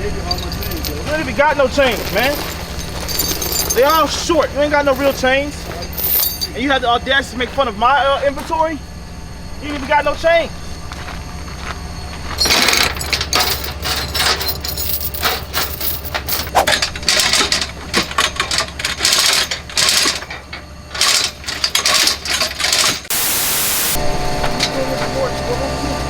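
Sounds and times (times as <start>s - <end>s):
coins clinking and jingling: 0.2s - 1.1s, 1.8s - 6.6s, 12.4s - 17.6s
steady hiss: 23.1s - 24.0s.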